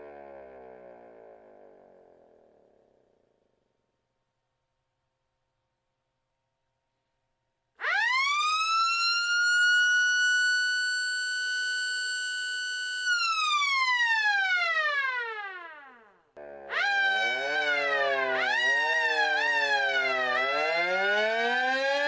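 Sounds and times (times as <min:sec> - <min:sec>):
mechanical siren wailing: 0:07.8 - 0:22.0.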